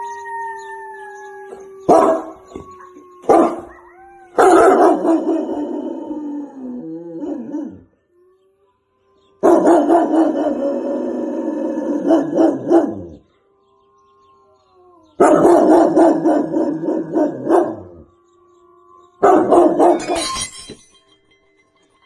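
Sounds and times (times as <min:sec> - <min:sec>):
dog barking: 0:01.9 - 0:02.4, 0:03.2 - 0:03.8, 0:04.4 - 0:05.6, 0:09.4 - 0:10.8, 0:12.0 - 0:13.2, 0:15.2 - 0:18.0, 0:19.2 - 0:20.2.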